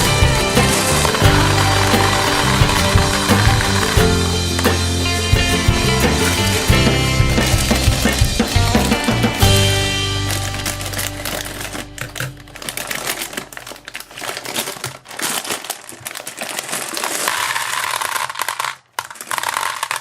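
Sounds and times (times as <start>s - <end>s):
background music: 0.0s - 13.7s
crinkling handling noise: 7.4s - 20.0s.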